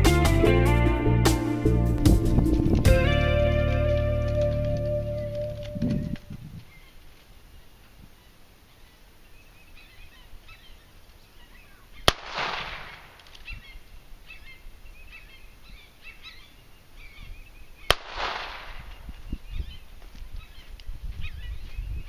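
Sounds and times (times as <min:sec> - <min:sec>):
birds chirping: 0:00.0 - 0:22.0
handgun shots with echo: 0:12.1 - 0:13.4, 0:17.9 - 0:18.9.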